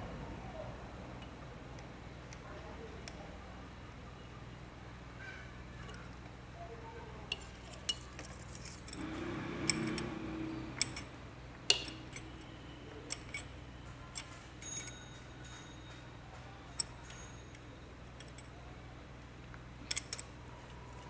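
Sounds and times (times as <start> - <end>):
faint low hum: 0.0 - 21.0
metal tools clinking on engine: 11.7 - 18.6, 19.8 - 20.4.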